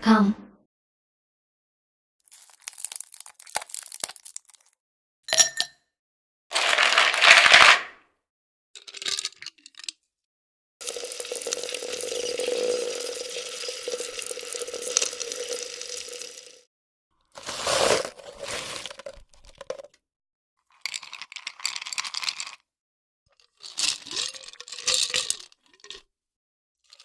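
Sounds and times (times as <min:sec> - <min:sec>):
ice crackling and cracking: 0:02.3 - 0:04.8, 0:10.8 - 0:16.6, 0:17.4 - 0:20.0
ice crunching: 0:02.3 - 0:04.8, 0:10.8 - 0:16.6, 0:17.4 - 0:19.9
ice clink: 0:05.3 - 0:05.8, 0:10.8 - 0:16.6.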